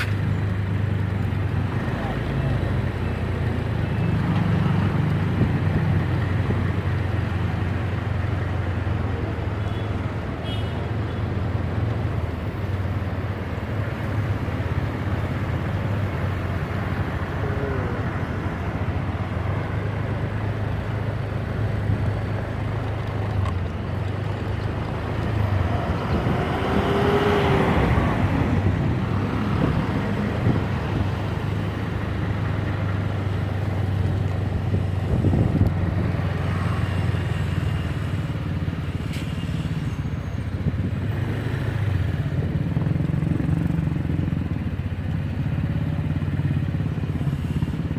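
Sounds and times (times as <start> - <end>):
traffic noise: 0.0 - 47.9
low engine hum: 11.0 - 47.9
vehicle passing: 24.7 - 32.0.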